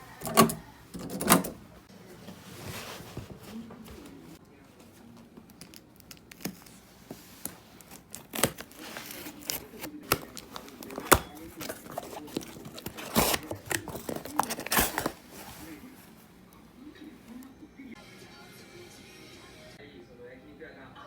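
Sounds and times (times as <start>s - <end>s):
cardboard rustling and tearing: 5.5s - 16.2s.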